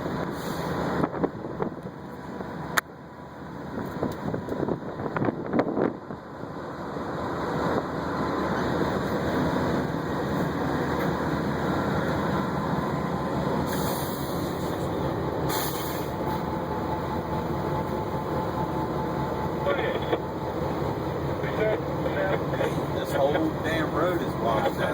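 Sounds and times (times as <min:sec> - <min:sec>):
train cars rumbling on rails: 0:00.0 - 0:24.9
hissing bursts: 0:13.6 - 0:14.8.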